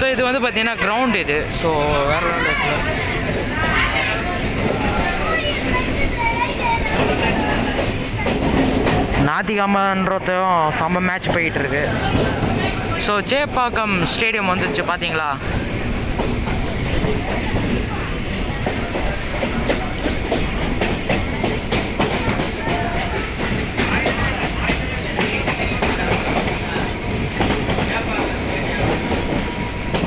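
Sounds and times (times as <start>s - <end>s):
electric train running: 11.2s - 30.0s.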